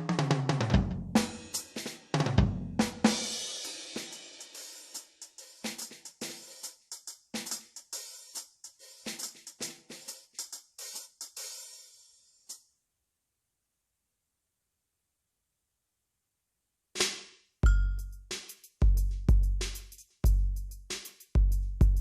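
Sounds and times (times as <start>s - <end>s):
electronic drum kit: 0.0s - 11.8s, 17.0s - 22.0s.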